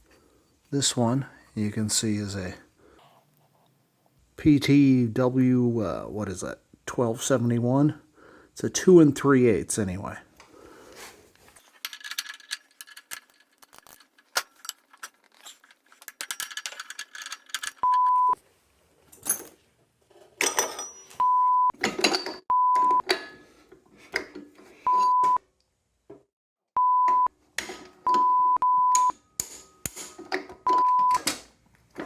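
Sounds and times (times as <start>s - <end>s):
tools clinking on metal: 11.6s - 18.4s, 19.1s - 19.6s, 20.4s - 21.2s, 21.8s - 22.4s
censor beep: 17.8s - 18.4s, 21.2s - 21.7s, 22.5s - 23.0s, 24.9s - 25.4s, 26.8s - 27.3s, 28.1s - 29.2s, 30.6s - 31.2s.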